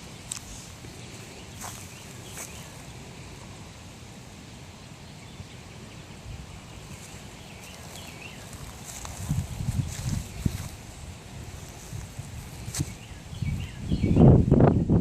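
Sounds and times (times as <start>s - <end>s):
outdoor background noise: 0.0s - 15.0s
faint bird chirps: 12.5s - 14.9s.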